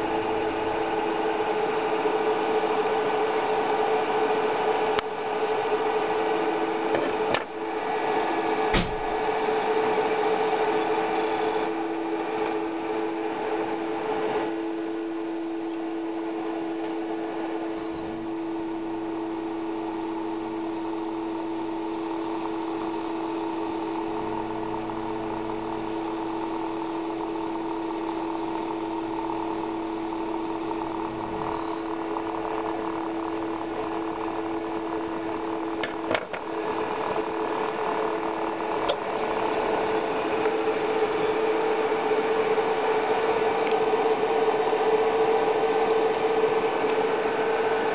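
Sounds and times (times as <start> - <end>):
electrical hum of held tones: 0.0 - 47.9
lower hum: 14.8 - 42.2.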